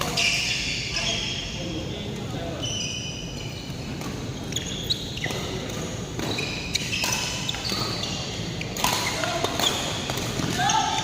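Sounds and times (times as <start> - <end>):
shoes squeaking on floor: 0.0 - 1.9, 2.5 - 11.0
racket hitting shuttlecock: 5.3 - 7.9, 8.8 - 10.7.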